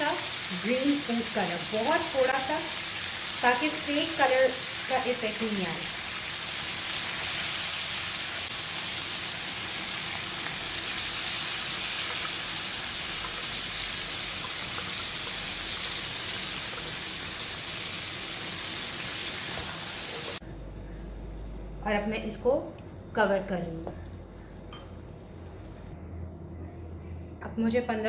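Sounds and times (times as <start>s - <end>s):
chicken sizzling in hot oil: 0.0s - 20.4s.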